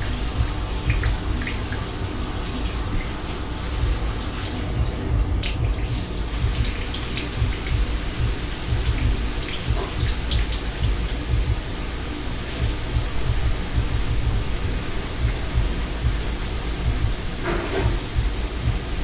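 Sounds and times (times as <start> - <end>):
water dripping: 0.0 - 19.0
water pouring and splashing: 0.0 - 19.0.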